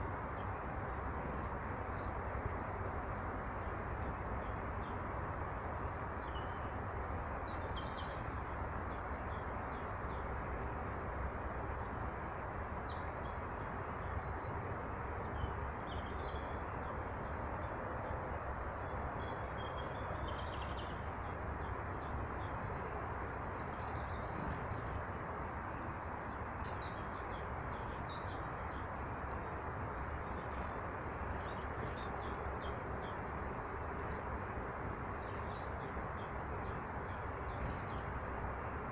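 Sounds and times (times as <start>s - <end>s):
small birds chirping: 15.3s - 38.4s
steady rushing noise: 22.5s - 38.9s.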